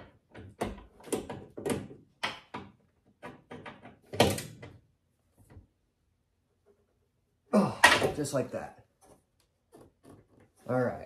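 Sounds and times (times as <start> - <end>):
sharp knocks and clunks: 0.0 - 4.8.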